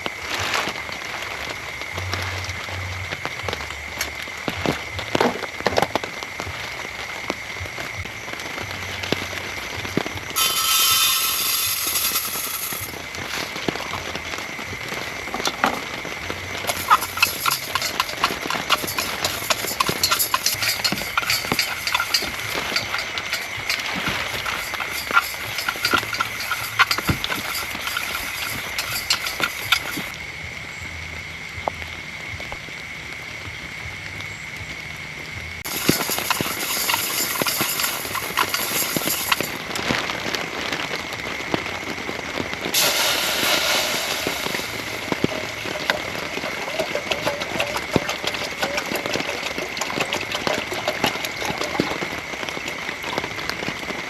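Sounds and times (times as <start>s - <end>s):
heavy rain: 0.0s - 54.0s
louder hiss: 10.3s - 13.6s, 42.8s - 46.2s.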